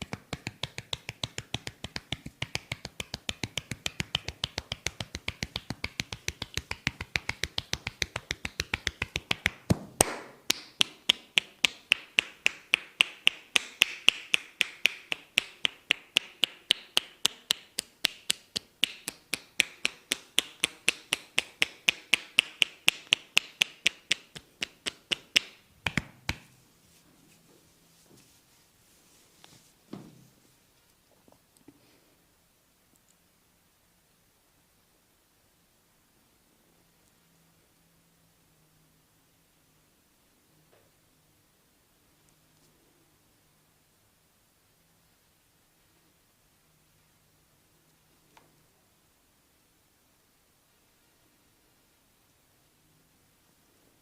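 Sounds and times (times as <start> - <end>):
percussive massage taps: 0.0 - 26.6.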